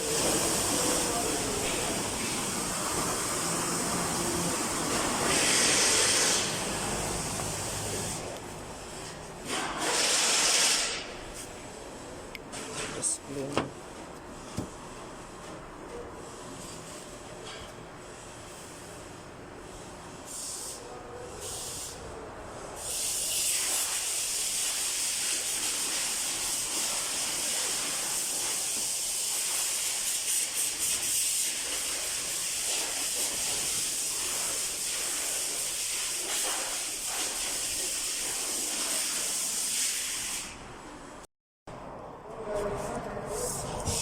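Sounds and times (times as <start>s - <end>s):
pressurised air jet hissing: 0.0s - 8.4s, 9.5s - 11.1s.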